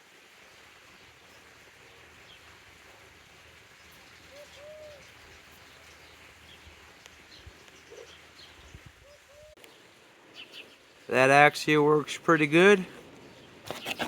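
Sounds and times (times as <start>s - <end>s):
quiet outdoor hiss: 0.0s - 14.0s
dove cooing: 4.2s - 5.7s.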